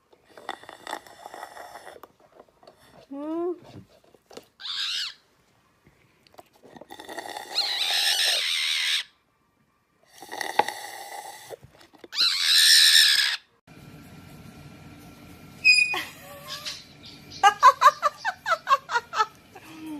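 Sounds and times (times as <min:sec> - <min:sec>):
parrot squawking: 0:04.6 - 0:05.2, 0:07.5 - 0:09.2, 0:12.2 - 0:13.5, 0:15.6 - 0:18.4
steady low hum: 0:13.7 - 0:19.9.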